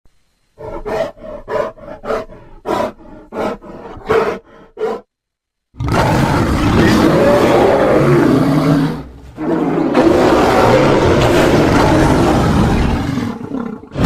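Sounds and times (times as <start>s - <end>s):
panda rough continuous call: 0.6s - 5.1s.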